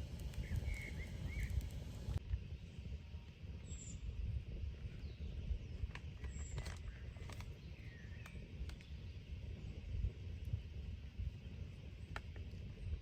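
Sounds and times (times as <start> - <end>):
low forest rumble: 0.0 - 13.0
bird chirps: 0.4 - 1.7.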